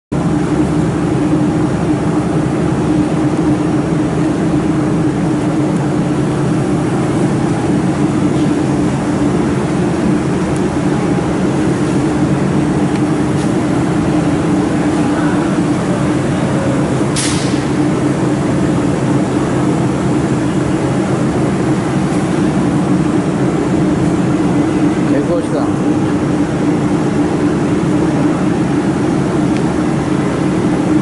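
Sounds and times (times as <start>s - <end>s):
steady machine drone: 0.1s - 31.0s.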